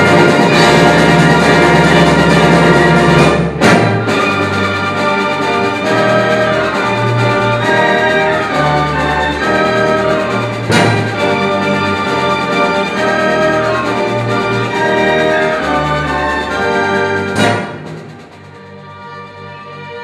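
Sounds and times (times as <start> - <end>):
orchestra playing brass-led chords: 0.0 - 20.0.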